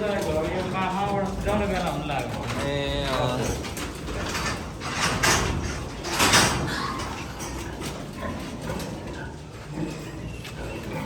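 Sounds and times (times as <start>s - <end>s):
pigs squealing and grunting: 3.0s - 11.0s.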